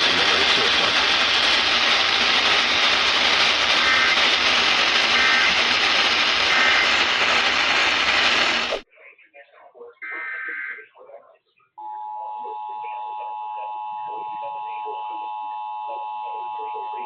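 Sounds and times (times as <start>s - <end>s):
radio static: 0.0s - 10.6s.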